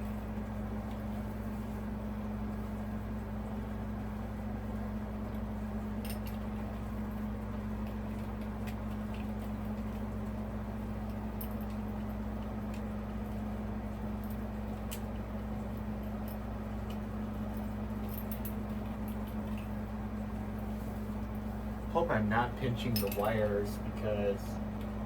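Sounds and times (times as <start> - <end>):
steady low hum: 0.0 - 25.0
small parts clicking and rattling: 6.0 - 6.7, 16.0 - 19.7, 22.9 - 23.5.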